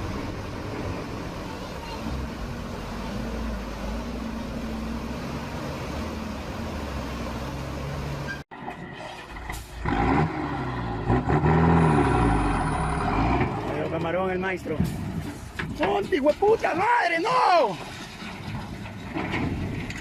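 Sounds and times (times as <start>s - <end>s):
engine revving: 9.2s - 13.9s.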